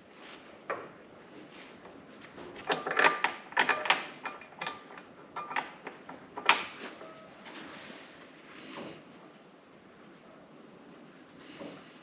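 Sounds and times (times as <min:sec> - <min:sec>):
metal bolts and nuts clinking: 0:02.6 - 0:07.2.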